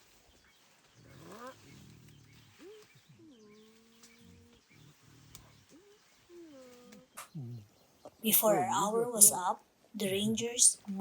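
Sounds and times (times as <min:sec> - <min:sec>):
quiet forest background: 0:00.0 - 0:11.0
faint animal calls: 0:01.0 - 0:07.8.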